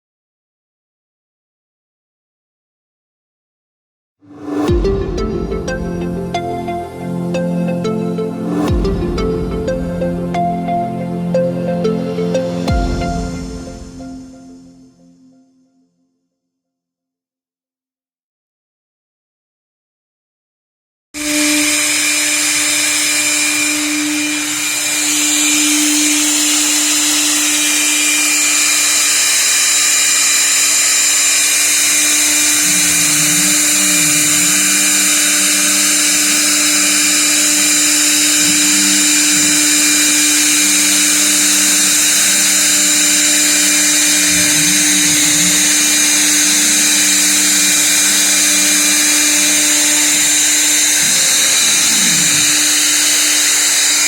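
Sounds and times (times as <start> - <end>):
low hum: 4.3 - 15.3
router spindle high whine: 4.4 - 15.2, 21.2 - 54.0.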